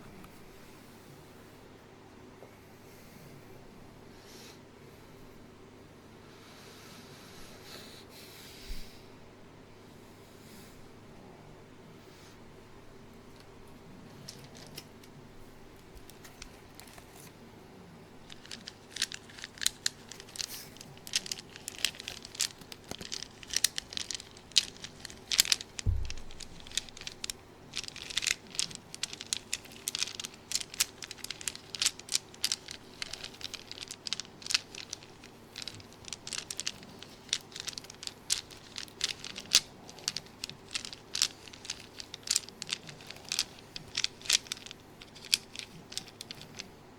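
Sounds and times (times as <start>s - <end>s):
crinkling and crackling: 13.2s - 46.9s
low thump: 25.9s - 26.6s.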